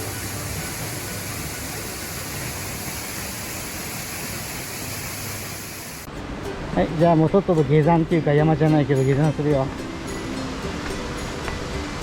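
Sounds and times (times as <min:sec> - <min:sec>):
waterfall rushing: 0:00.0 - 0:06.8, 0:09.2 - 0:12.0.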